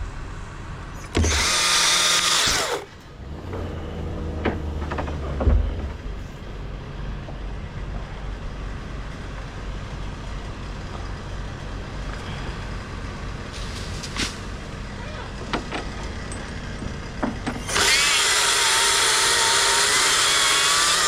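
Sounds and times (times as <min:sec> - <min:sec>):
heavy engine rumbling: 0:00.0 - 0:19.8.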